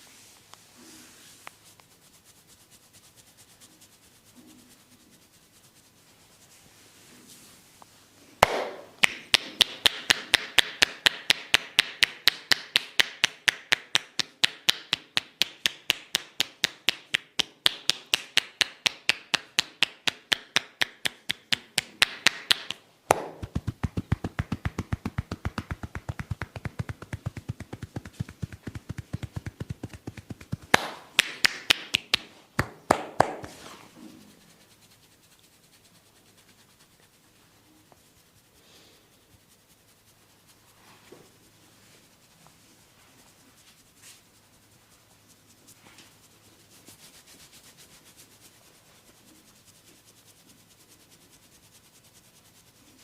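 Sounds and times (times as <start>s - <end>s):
hands tapping in fast rhythm: 8.4s - 33.6s.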